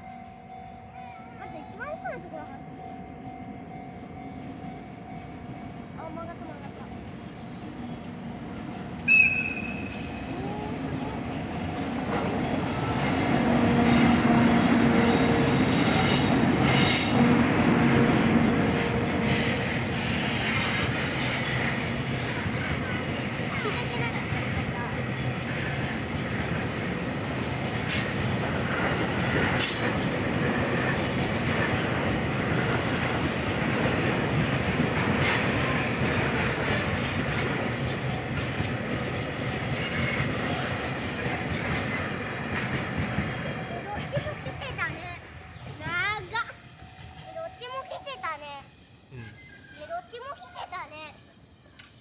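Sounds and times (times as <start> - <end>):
train wheels on rails: 1.4 - 52.0
high-pitched wheel squeal: 9.1 - 10.2, 49.2 - 50.1.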